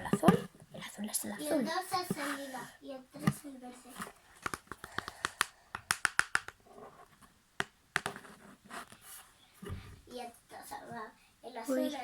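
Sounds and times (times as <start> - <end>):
small objects clicking and tapping: 4.4 - 6.6.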